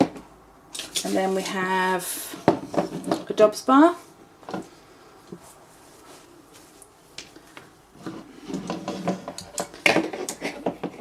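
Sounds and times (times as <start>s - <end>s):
soft rubbing: 5.4s - 7.1s.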